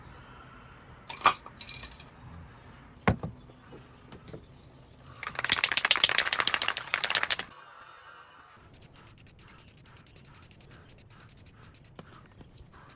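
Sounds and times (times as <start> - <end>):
sharp clicks: 5.0 - 7.5, 8.7 - 12.0.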